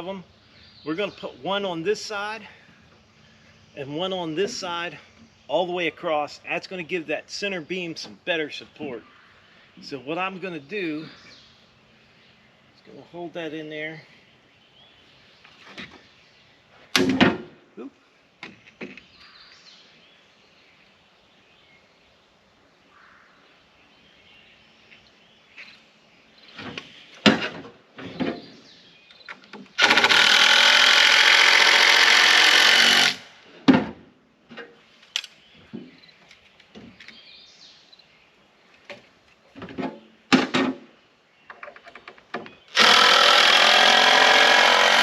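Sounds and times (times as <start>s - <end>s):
power drill driving a screw: 29.8s - 33.3s, 42.7s - 45.0s.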